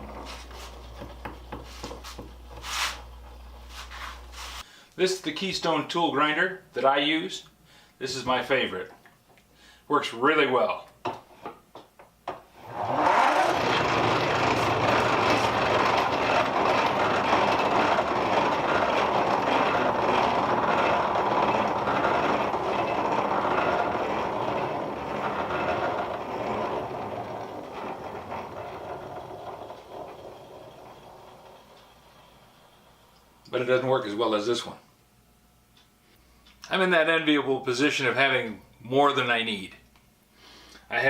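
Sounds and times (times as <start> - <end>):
grinder gear whir: 12.6 - 33.6.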